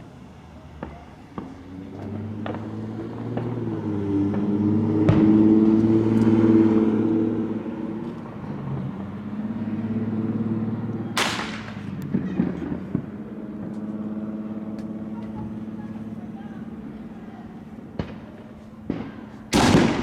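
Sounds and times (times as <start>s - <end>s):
sharp bang: 11.2s - 12.0s.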